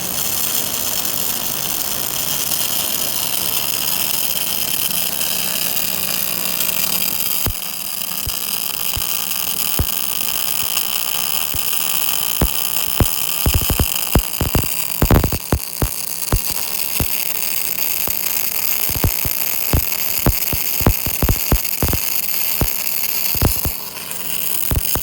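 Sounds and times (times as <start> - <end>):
welding hiss and crackle: 0.0 - 25.0
sharp clicks: 12.4 - 17.2, 18.8 - 23.8, 24.7 - 25.0
low hum: 18.9 - 22.0.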